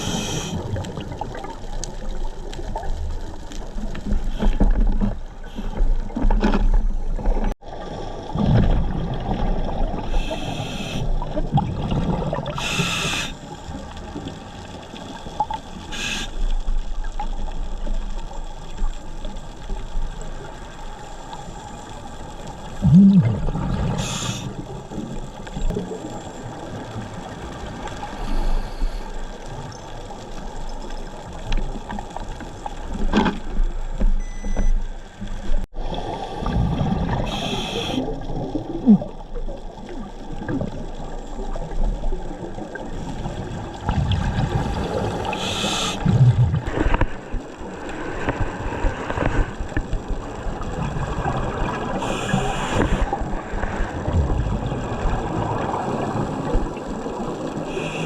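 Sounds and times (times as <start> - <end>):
exhaled bubbles rushing: 11.1 - 12.8, 22.8 - 26.9, 35.8 - 37.4, 38.0 - 47.8, 50.4 - 57.7
diver breathing through regulator: 12.6 - 13.4, 23.9 - 24.6, 45.2 - 46.2, 52.0 - 53.1.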